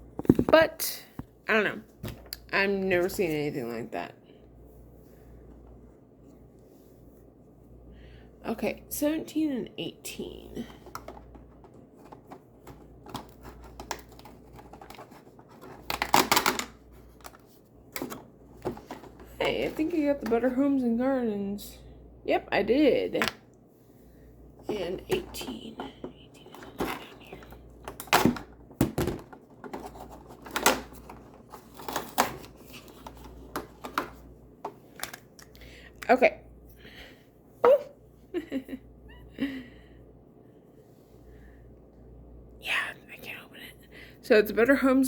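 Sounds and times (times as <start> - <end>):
packaging clicking and rustling: 11.0 - 19.2, 26.5 - 34.1.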